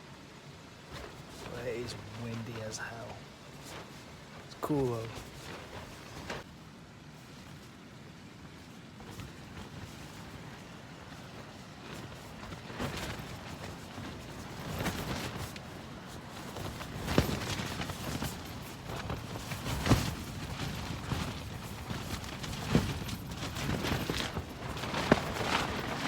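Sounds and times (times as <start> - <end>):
tent fabric snapping taut: 11.9 - 26.0.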